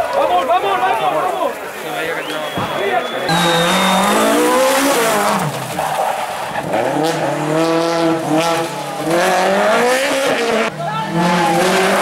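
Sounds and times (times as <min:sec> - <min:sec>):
rally car engine at full throttle: 0:03.3 - 0:12.0.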